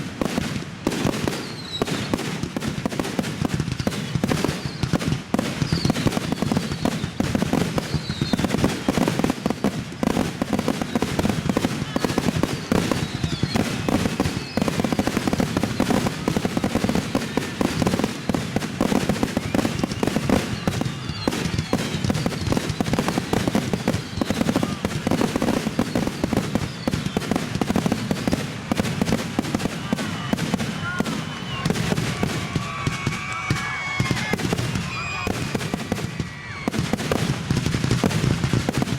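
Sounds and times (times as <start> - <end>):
fireworks bursts and crackling: 0.0 - 38.9
fireworks whistling: 0.0 - 38.9
voices: 29.4 - 36.6.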